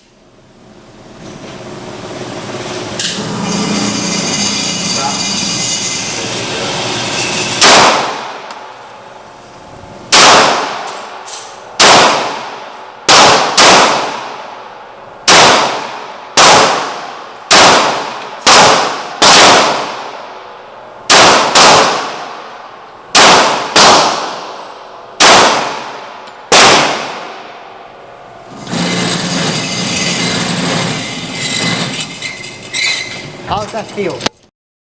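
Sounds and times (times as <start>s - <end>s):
pistol shots with echo: 7.6s - 8.5s, 10.1s - 14.5s, 15.2s - 20.4s, 21.1s - 27.6s.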